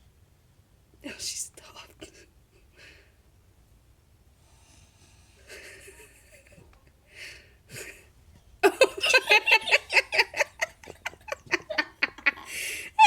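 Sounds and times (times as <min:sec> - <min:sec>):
breathy hiss: 0:04.3 - 0:06.5, 0:12.3 - 0:13.0
person giggling: 0:08.6 - 0:13.0.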